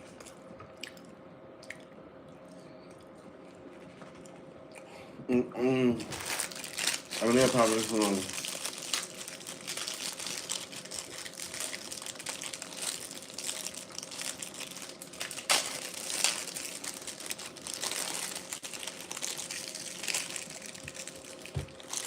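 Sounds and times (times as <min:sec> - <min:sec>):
wrapper crinkling: 0:06.0 - 0:22.0.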